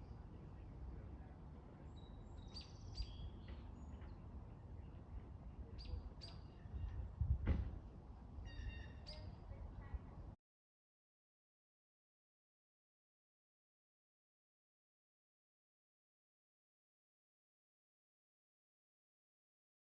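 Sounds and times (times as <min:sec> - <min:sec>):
small songbirds chirping: 0:01.7 - 0:05.0, 0:05.7 - 0:07.0.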